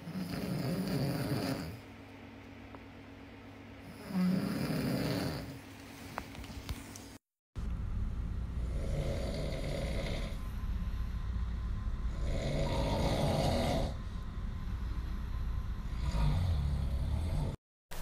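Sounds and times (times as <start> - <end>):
snoring: 0.0 - 1.8, 3.8 - 5.6, 8.6 - 10.4, 12.1 - 14.0, 15.9 - 17.6
steady low rumble: 7.6 - 17.6.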